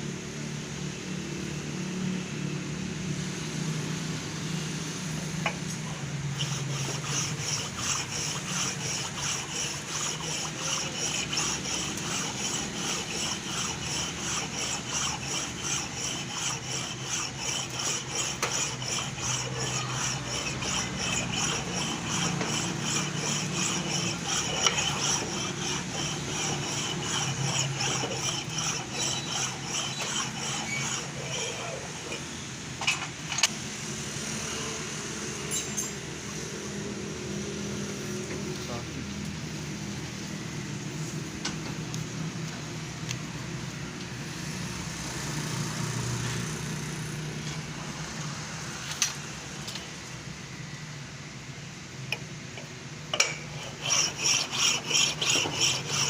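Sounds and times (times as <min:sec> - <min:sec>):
high pulsing scraping of cutter: 0:05.8 - 0:32.5, 0:53.5 - 0:56.0
machine motor hum: 0:06.3 - 0:32.1.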